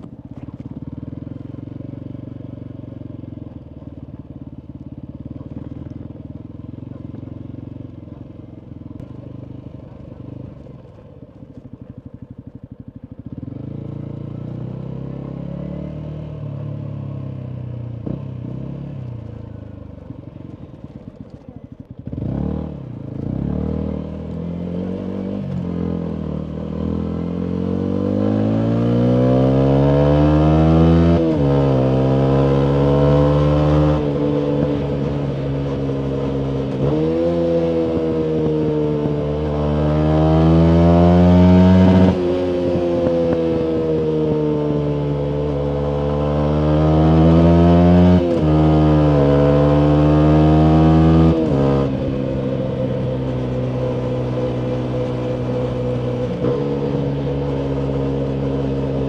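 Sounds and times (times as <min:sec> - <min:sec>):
motorcycle engine revving: 0:00.0 - 0:59.0
motorcycle accelerating away: 0:13.2 - 0:20.6, 0:21.2 - 0:59.0.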